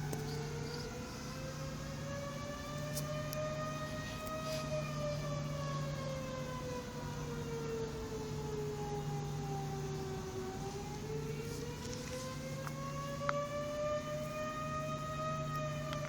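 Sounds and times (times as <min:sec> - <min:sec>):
air raid siren wailing: 0:00.0 - 0:16.0.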